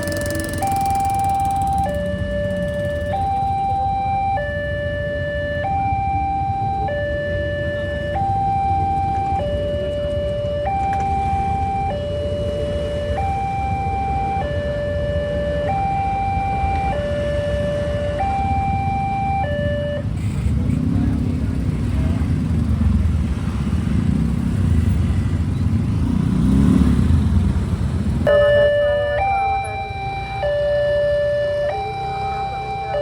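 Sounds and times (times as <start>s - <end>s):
two-tone crossing alarm: 0.0s - 20.4s, 28.2s - 33.0s.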